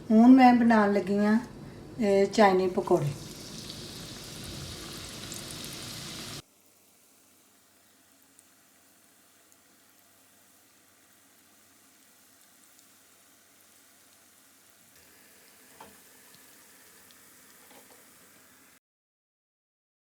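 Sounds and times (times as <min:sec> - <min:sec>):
food frying in hot oil: 0:03.0 - 0:18.8.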